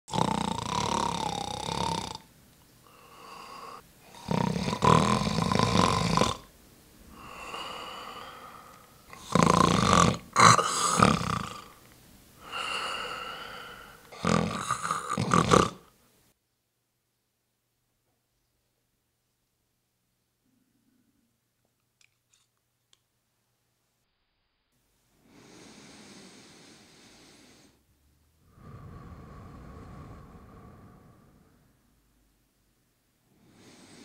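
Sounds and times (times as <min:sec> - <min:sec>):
person snoring: 0:00.1 - 0:02.3, 0:02.9 - 0:06.5, 0:07.1 - 0:11.8, 0:12.4 - 0:15.9, 0:25.2 - 0:27.8, 0:28.4 - 0:31.8, 0:33.3 - 0:34.0
quiet breaths: 0:00.1 - 0:16.4, 0:20.4 - 0:21.5, 0:24.9 - 0:34.0.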